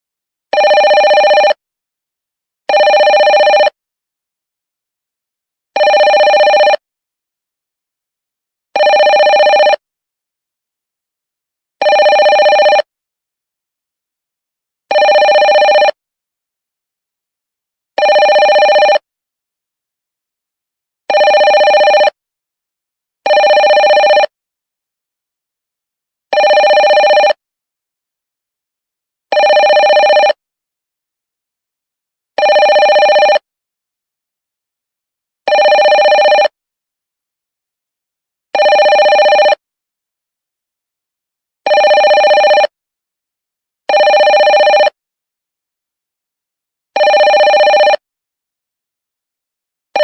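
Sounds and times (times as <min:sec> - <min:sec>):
telephone ringing: 0:00.5 - 0:01.6, 0:02.7 - 0:03.8, 0:05.8 - 0:06.8, 0:08.8 - 0:09.8, 0:11.8 - 0:12.9, 0:14.9 - 0:16.0, 0:18.0 - 0:19.1, 0:21.1 - 0:22.2, 0:23.3 - 0:24.4, 0:26.3 - 0:27.4, 0:29.3 - 0:30.4, 0:32.4 - 0:33.5, 0:35.5 - 0:36.6, 0:38.6 - 0:39.7, 0:41.7 - 0:42.8, 0:43.9 - 0:45.0, 0:47.0 - 0:48.1.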